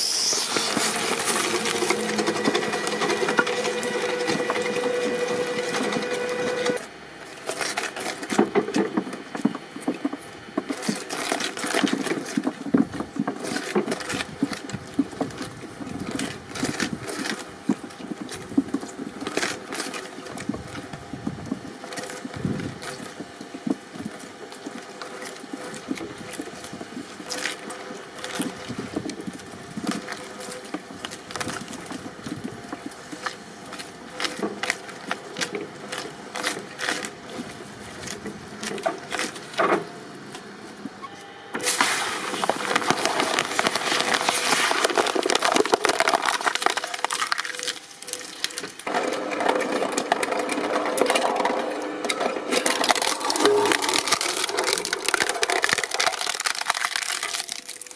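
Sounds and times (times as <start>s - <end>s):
press machine crushing: 0.0s - 6.8s, 41.6s - 57.9s
dense crunching and crackling: 0.0s - 57.9s
sharp cracks and snaps: 41.7s - 48.9s, 52.5s - 57.9s.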